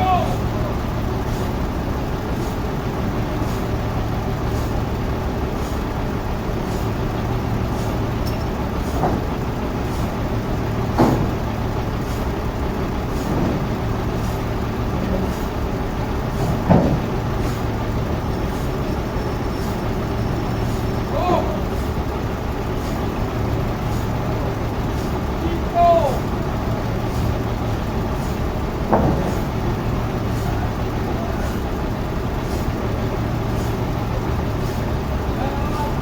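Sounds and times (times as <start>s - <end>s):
sawmill machinery running: 0.0s - 36.0s
short knocks: 7.9s - 10.0s, 10.8s - 11.6s, 16.3s - 17.7s, 28.2s - 29.7s.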